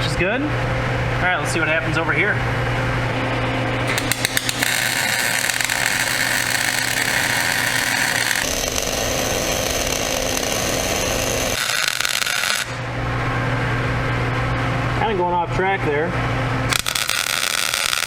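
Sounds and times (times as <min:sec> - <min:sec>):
low steady hum: 0:00.0 - 0:11.6
electric arc welding crackle: 0:03.0 - 0:12.9, 0:16.7 - 0:18.0.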